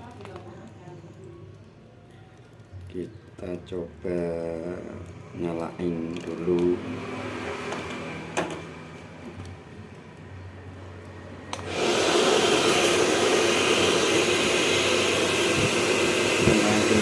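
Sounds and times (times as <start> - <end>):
hair dryer blowing: 11.5 - 17.0.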